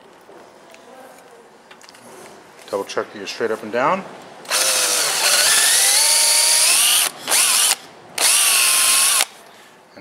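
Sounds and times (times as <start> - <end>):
electric drill boring into wood: 4.5 - 9.3.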